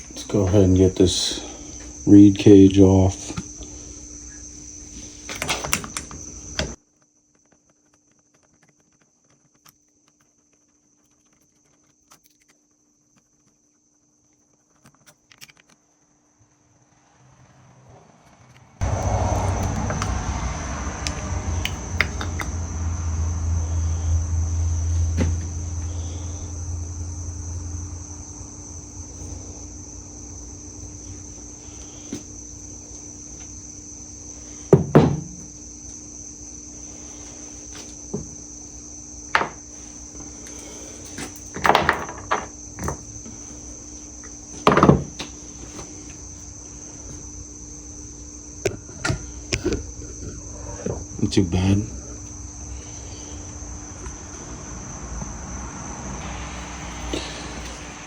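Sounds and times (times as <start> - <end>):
high-pitched whine: 16.4 - 34.6, 45.2 - 58.0
low hum: 16.4 - 34.6, 46.1 - 58.0.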